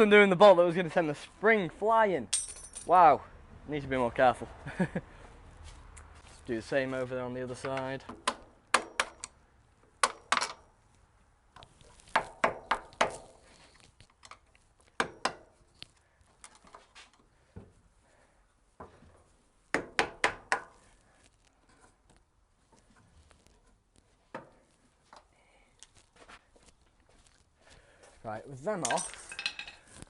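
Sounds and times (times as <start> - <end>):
hand tools clinking on metal: 2.3 - 3.0, 28.7 - 29.9.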